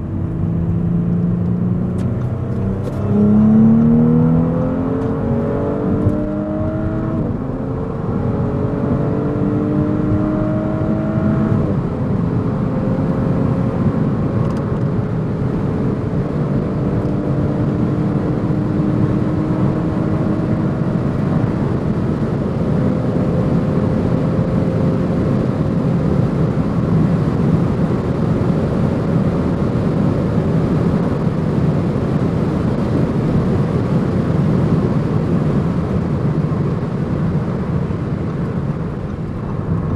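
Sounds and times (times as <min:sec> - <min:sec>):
car engine accelerating: 0:00.0 - 0:39.9
wind and road noise: 0:00.0 - 0:39.9.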